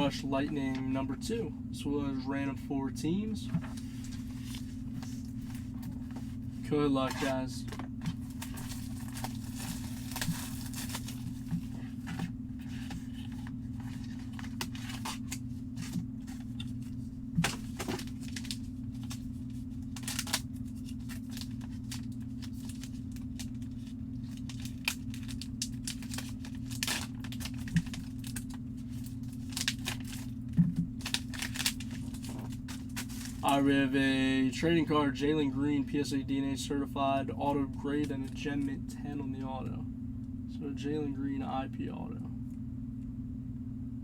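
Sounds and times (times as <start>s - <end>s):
steady low hum: 0.0s - 44.0s
plastic wrap tearing and crinkling: 8.2s - 16.6s, 17.4s - 30.4s, 31.0s - 33.6s.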